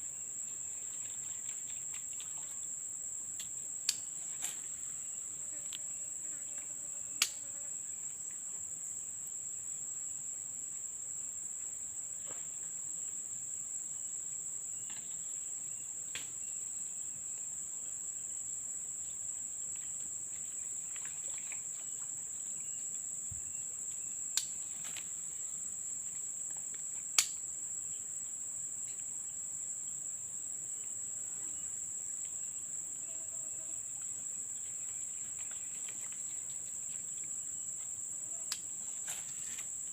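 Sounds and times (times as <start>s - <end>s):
shrill insect chorus: 19.8s - 39.9s.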